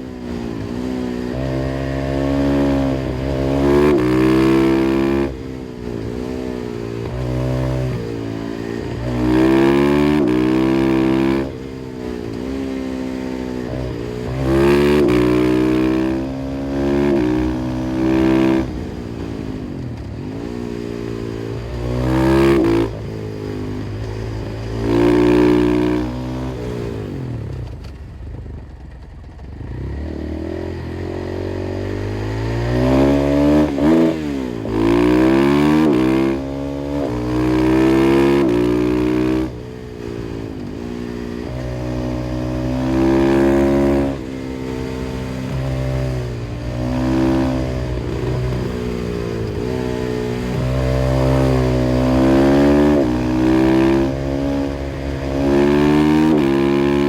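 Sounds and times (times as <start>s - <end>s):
motorcycle engine accelerating hard: 0.0s - 57.0s.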